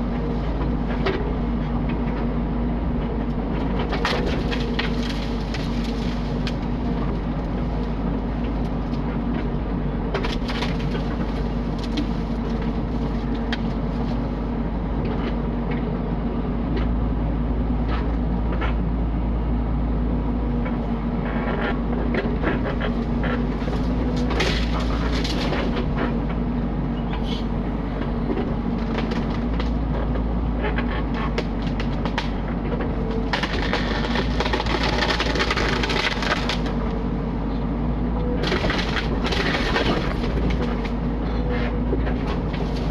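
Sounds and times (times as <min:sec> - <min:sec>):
excavator engine running: 0:00.0 - 0:42.9
timber knocking and cracking: 0:03.6 - 0:08.0, 0:10.1 - 0:14.2, 0:22.1 - 0:26.2, 0:28.0 - 0:36.8, 0:38.4 - 0:42.9.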